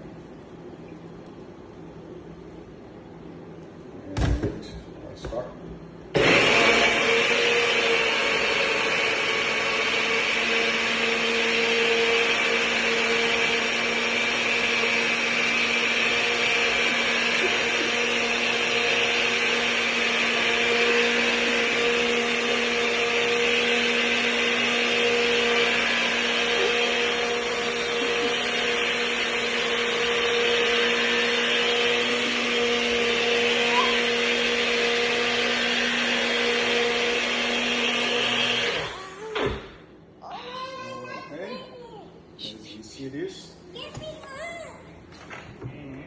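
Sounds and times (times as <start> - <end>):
electric blender running: 6.1 - 39.6.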